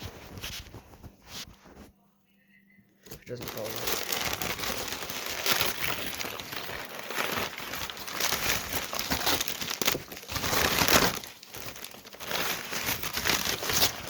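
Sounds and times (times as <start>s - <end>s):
packaging crinkling and rustling: 3.0s - 14.0s.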